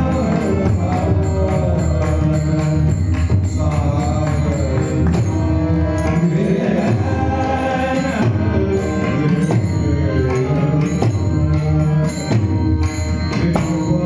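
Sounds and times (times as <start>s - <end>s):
group singing devotional song: 3.6s - 9.6s.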